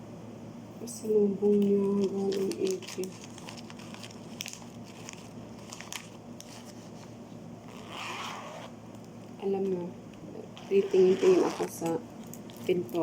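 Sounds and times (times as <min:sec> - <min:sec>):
packaging crinkling: 0:01.6 - 0:09.1, 0:10.6 - 0:13.0.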